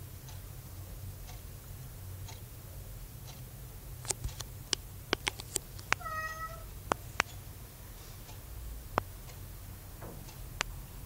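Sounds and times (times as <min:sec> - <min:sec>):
sharp clicks and taps: 0:04.0 - 0:06.1, 0:06.8 - 0:07.4, 0:10.0 - 0:10.8
cat meowing: 0:06.0 - 0:06.7.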